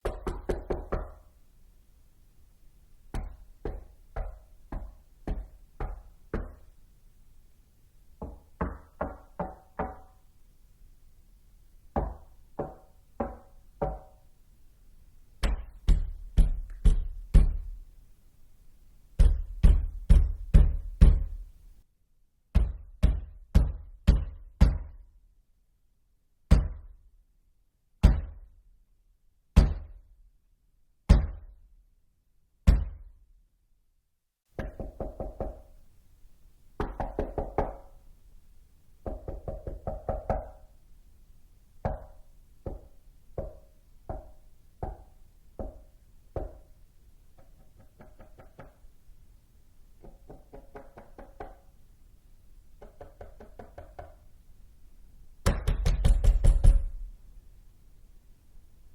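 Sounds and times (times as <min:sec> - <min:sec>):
knocking on a door: 0:00.0 - 0:01.2, 0:08.2 - 0:10.1, 0:12.0 - 0:14.2, 0:15.4 - 0:17.7, 0:19.2 - 0:21.4, 0:22.5 - 0:24.9, 0:34.6 - 0:35.7, 0:36.8 - 0:37.9, 0:39.0 - 0:40.6, 0:41.8 - 0:46.6, 0:47.4 - 0:48.8, 0:50.0 - 0:51.6, 0:52.8 - 0:54.2, 0:55.4 - 0:57.0.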